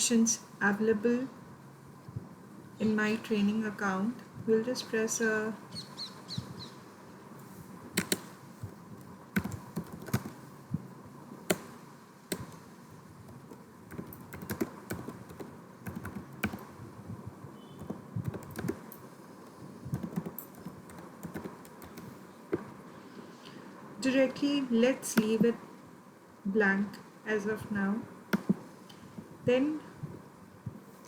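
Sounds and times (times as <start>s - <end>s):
computer keyboard typing: 8.0s - 8.3s, 9.4s - 10.4s, 12.3s - 12.6s, 13.3s - 16.7s, 17.8s - 19.0s, 19.9s - 22.2s.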